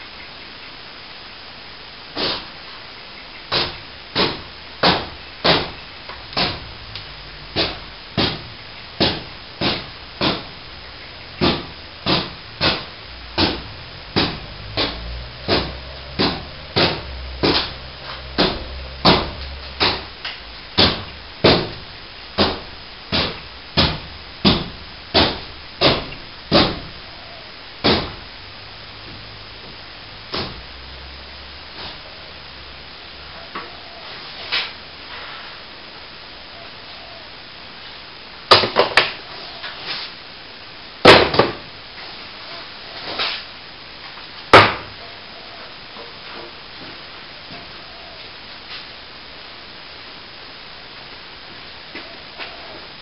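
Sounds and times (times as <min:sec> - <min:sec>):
low rumble: 0:05.8 - 0:32.9
hammer blows: 0:11.3 - 0:27.0.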